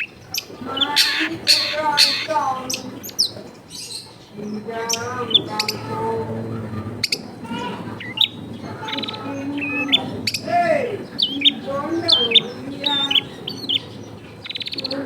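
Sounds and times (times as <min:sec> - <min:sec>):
shrike singing chirps and whistles: 0:00.0 - 0:02.8
sharp bird clicks: 0:00.8 - 0:02.4.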